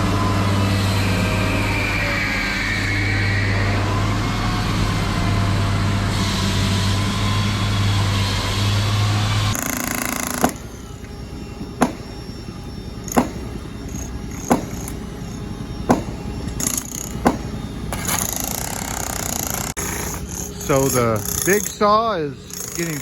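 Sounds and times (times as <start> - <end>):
sharp knocks: 9.6 - 21.7.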